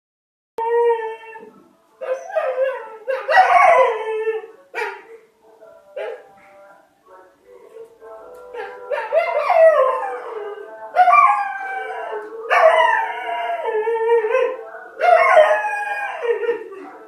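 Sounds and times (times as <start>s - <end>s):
dog howling: 0.6s - 5.0s, 8.6s - 17.0s.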